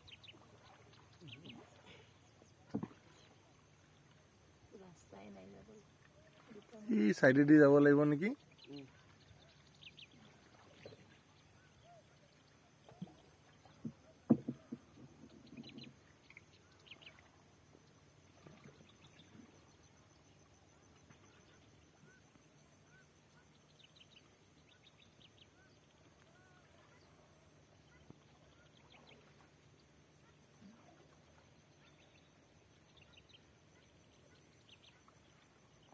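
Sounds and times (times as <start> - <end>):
faint bird chirps: 0.0 - 3.4, 8.2 - 35.9
knocks: 13.8 - 14.9.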